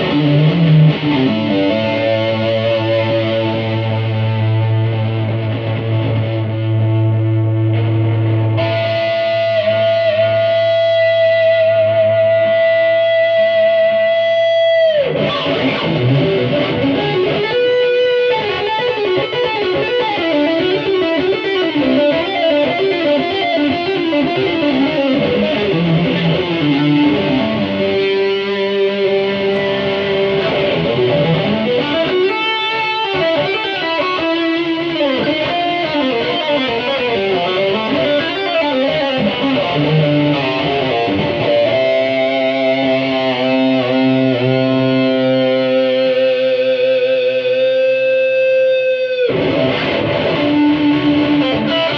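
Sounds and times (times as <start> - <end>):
electric guitar runs and chords: 0.0 - 51.9.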